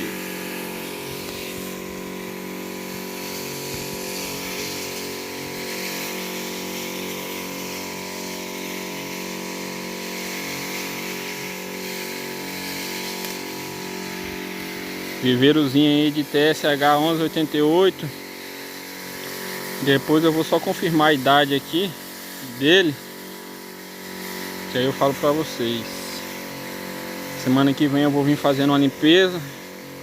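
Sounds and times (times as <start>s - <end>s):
hiss of air and spray: 0.0s - 30.0s
small gasoline engine running: 0.0s - 30.0s.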